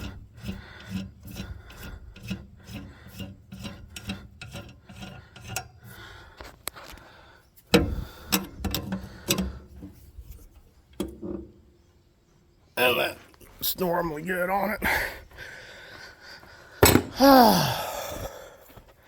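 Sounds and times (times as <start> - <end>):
hand tool rasping strokes: 0.0 - 7.0.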